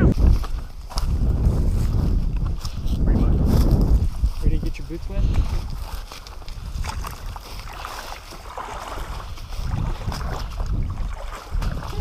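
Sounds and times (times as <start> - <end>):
wind rumble on microphone: 0.0 - 12.0
boots splashing through water: 5.3 - 12.0.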